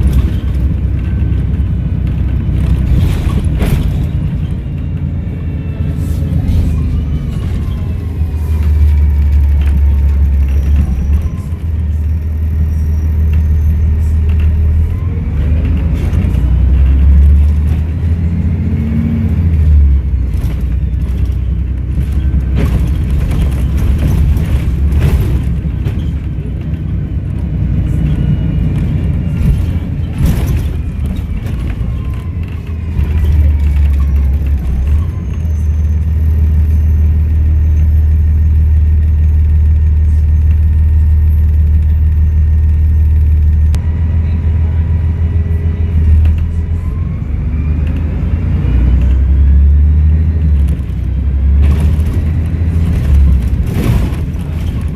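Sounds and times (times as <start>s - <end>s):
knocks and rattles: 0.0s - 5.1s, 20.2s - 27.5s, 28.6s - 35.1s
bus diesel engine drone: 0.0s - 54.9s.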